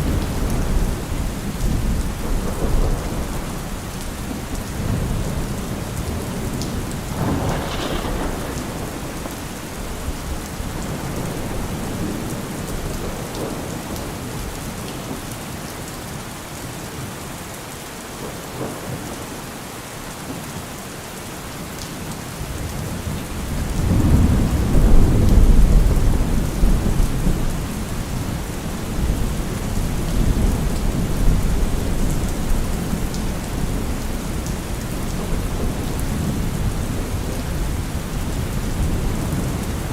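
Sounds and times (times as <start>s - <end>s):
low rolling thunder rumble: 0.0s - 14.5s, 22.5s - 39.9s
heavy rain falling: 0.0s - 39.9s
thunder crack: 6.9s - 12.3s.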